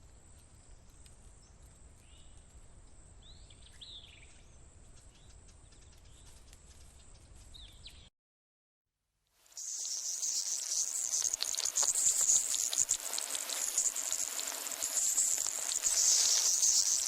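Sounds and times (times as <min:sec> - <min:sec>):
steady high hiss: 0:09.4 - 0:17.0
bird chirps: 0:09.6 - 0:17.0.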